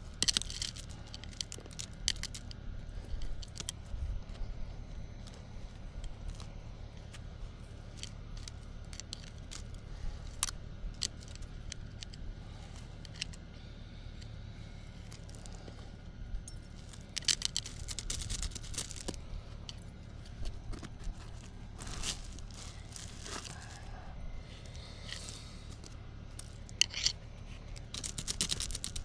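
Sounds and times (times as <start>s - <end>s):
crisp rustling: 16.7s - 29.0s
weeds and brush snapping: 16.7s - 29.0s.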